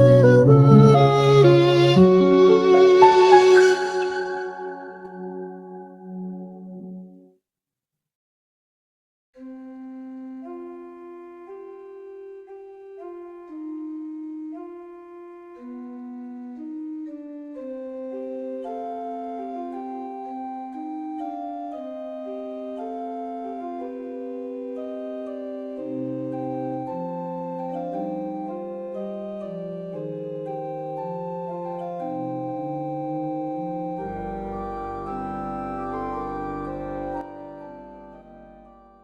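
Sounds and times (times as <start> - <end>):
bass notes: 0.0 - 6.8
sustained keyboard chords: 0.0 - 7.1, 25.0 - 39.0.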